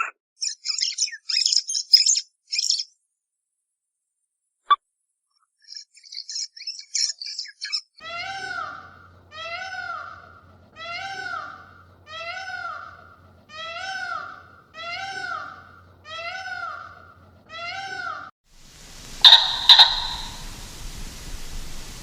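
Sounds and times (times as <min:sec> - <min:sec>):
small animal mewing: 0:19.2 - 0:20.4.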